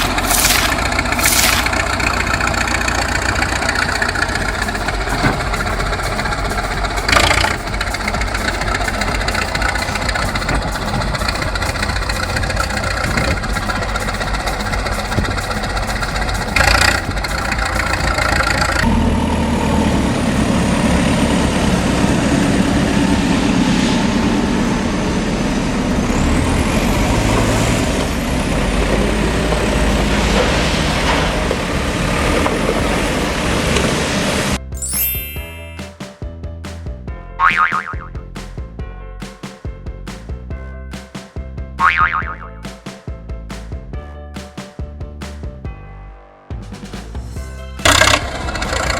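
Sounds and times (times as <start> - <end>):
different engine running: 0.0 - 34.6, 47.8 - 48.9
engine running: 0.0 - 34.6, 47.8 - 48.9.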